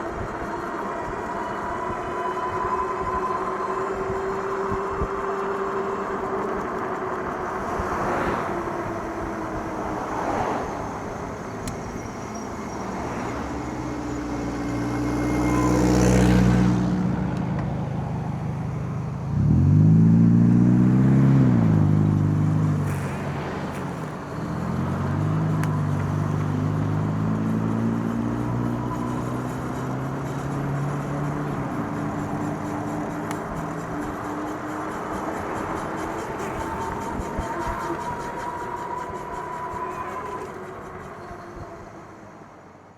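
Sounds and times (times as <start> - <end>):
steady road noise: 0.0 - 42.9
vehicle engines passing: 0.0 - 42.9
engine revving loudly: 7.3 - 17.4, 18.7 - 40.5.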